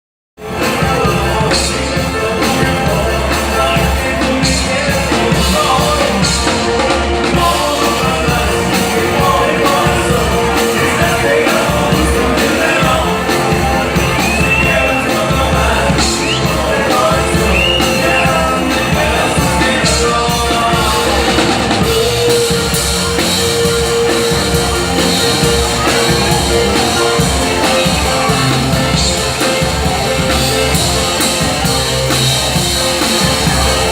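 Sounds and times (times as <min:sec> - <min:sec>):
live band playing: 0:00.4 - 0:33.9
person singing: 0:00.4 - 0:33.9.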